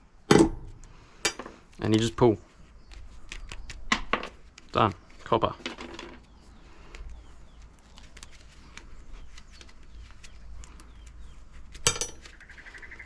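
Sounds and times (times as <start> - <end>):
scrap parts clicking and rattling: 4.0 - 6.3, 11.7 - 12.4
faint bird chirps: 6.2 - 13.0.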